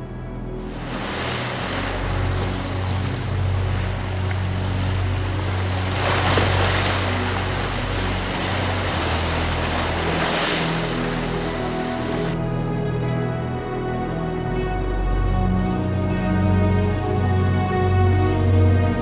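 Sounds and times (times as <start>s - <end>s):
low sustained music drone: 0.0s - 19.0s
surf washing in: 0.6s - 12.4s.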